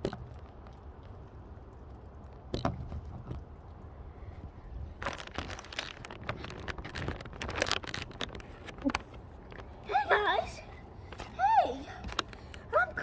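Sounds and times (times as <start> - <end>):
material rustling and crinkling: 5.0 - 9.8.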